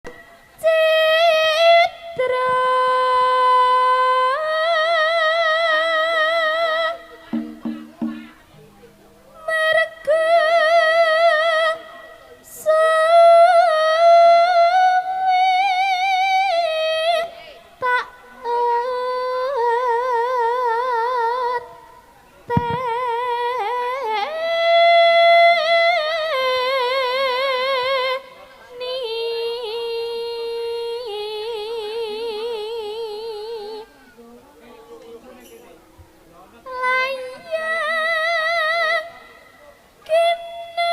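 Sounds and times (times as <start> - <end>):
woman singing with vibrato: 0.0 - 8.4, 9.4 - 21.8, 22.5 - 33.9, 36.7 - 40.9.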